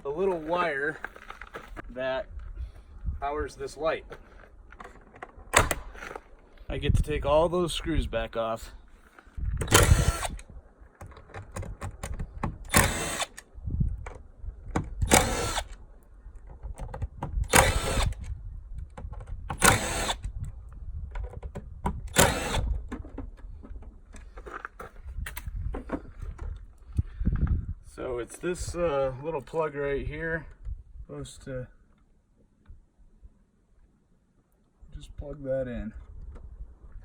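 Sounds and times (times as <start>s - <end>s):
drill-driver backing out screws: 9.6s - 10.4s, 11.1s - 13.5s, 14.8s - 15.8s, 17.5s - 18.3s, 19.5s - 20.3s, 21.9s - 22.9s.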